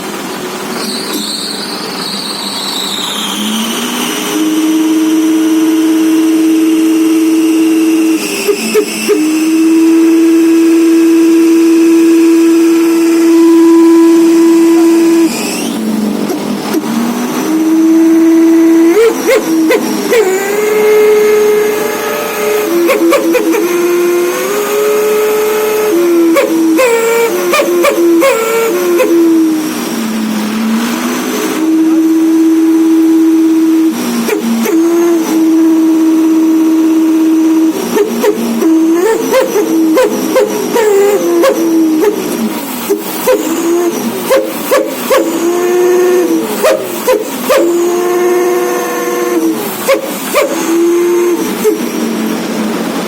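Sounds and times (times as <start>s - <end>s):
engine running: 0.0s - 53.0s
loud sustained whistling tone: 0.7s - 15.9s, 28.5s - 43.9s.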